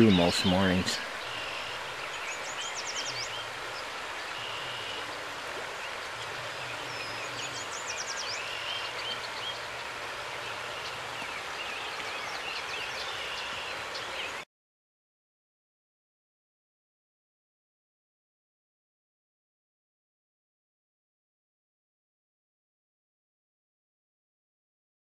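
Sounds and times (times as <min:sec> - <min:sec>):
rapid high bird song: 0:00.0 - 0:05.1, 0:05.7 - 0:14.4
songbirds singing: 0:00.0 - 0:14.4
stream rushing: 0:00.0 - 0:14.4.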